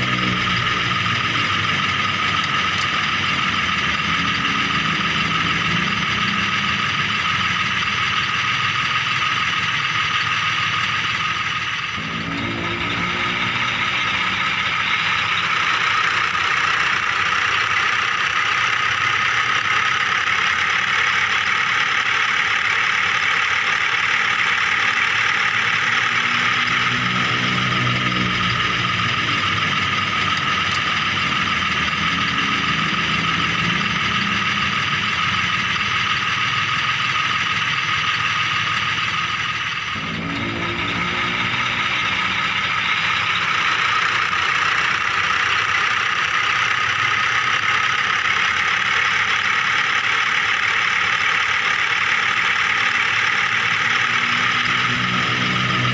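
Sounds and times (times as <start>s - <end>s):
toy vehicle motor whirring: 0.0s - 55.9s.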